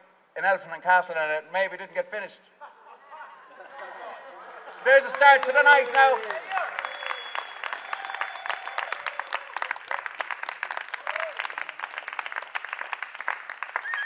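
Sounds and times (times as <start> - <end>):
audience applauding: 4.8 - 14.0.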